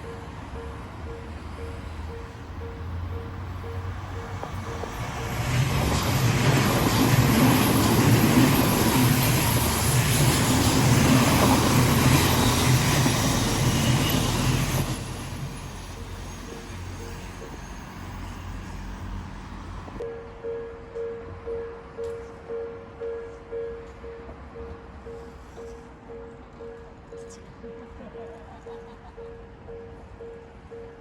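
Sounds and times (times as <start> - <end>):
train wheels on rail: 0.0 - 20.1
level crossing warning bell: 0.0 - 31.0.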